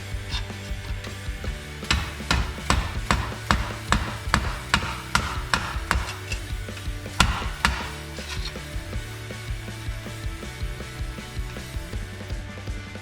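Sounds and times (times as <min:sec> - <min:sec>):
background music with steady beat: 0:00.0 - 0:13.0
hammer striking metal: 0:01.9 - 0:06.5, 0:07.2 - 0:08.1.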